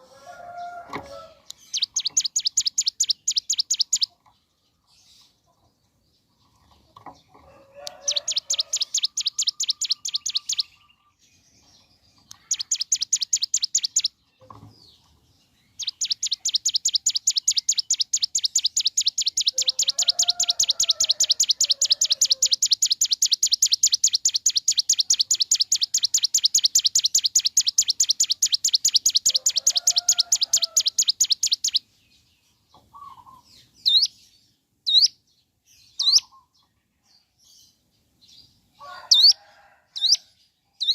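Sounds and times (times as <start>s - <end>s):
bird rattling trill: 8.0s - 10.6s, 15.8s - 31.8s.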